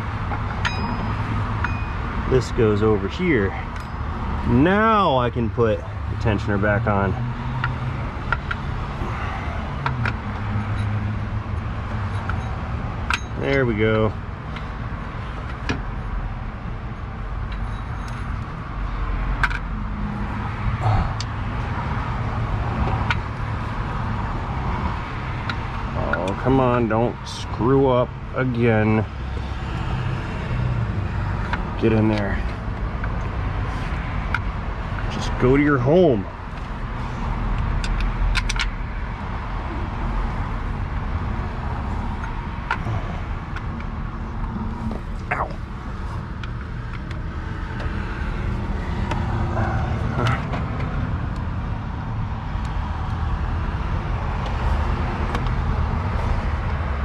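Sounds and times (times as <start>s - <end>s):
metallic clicks and knocks: 37.6s - 38.8s.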